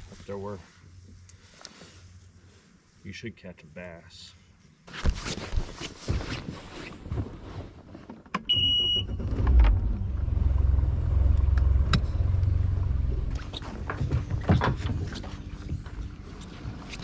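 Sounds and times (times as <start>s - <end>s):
knocks and clicks of gear: 8.0s - 10.0s, 10.6s - 17.0s
short high beep: 8.5s - 9.2s.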